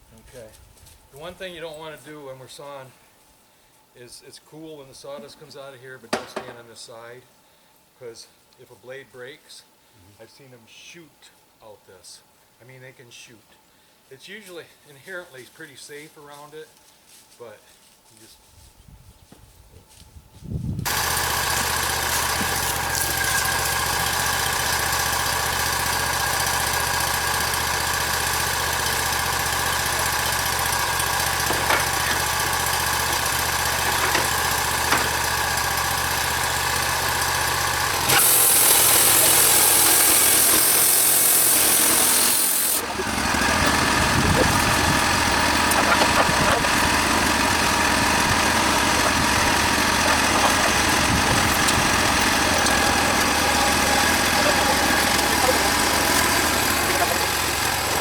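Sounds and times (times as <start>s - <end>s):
sawmill engine running: 20.8s - 58.0s
loud hiss: 37.9s - 42.8s.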